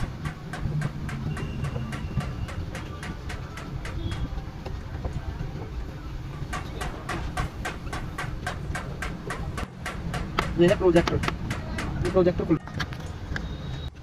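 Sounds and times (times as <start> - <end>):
rapid clicking: 0.0 - 4.4, 6.5 - 12.6.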